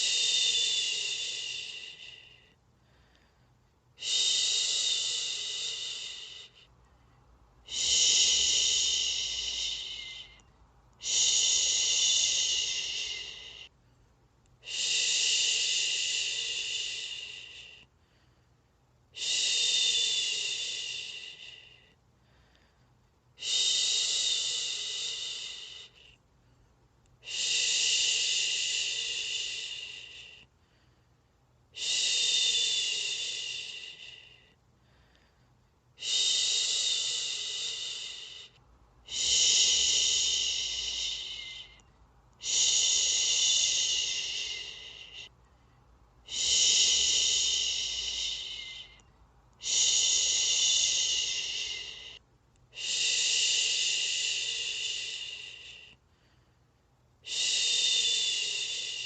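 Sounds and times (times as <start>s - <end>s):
person shushing: 7.7s - 10.4s, 11.0s - 13.7s, 39.1s - 41.8s, 42.4s - 45.3s, 46.3s - 49.0s, 49.6s - 52.2s.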